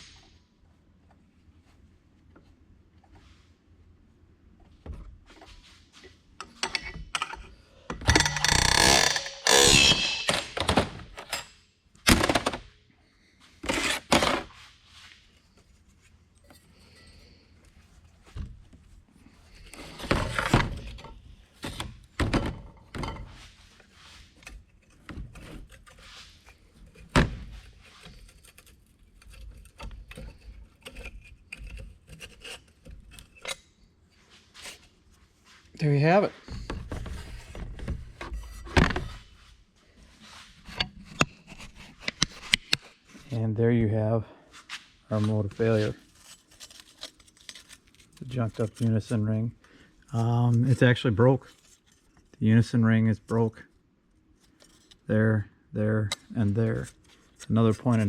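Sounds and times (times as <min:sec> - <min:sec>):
metal parts clunking and scraping: 0:06.0 - 0:12.7, 0:19.4 - 0:34.9, 0:36.4 - 0:39.5, 0:40.2 - 0:43.4.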